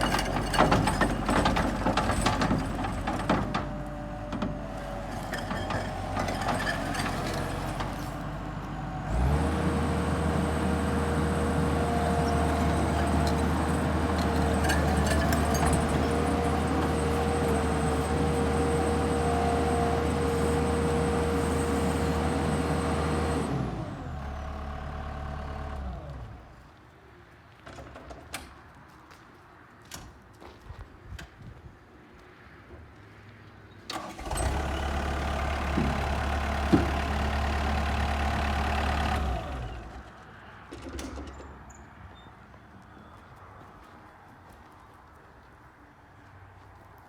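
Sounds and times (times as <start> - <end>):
diesel engine revving: 1.4 - 26.4, 33.9 - 40.0.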